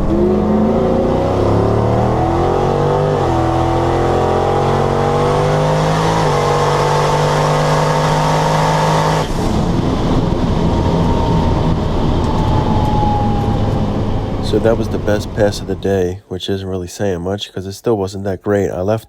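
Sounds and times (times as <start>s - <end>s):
engine at full throttle: 0.0s - 15.9s
rushing noise: 9.2s - 16.0s
faint falling whine: 9.3s - 16.0s.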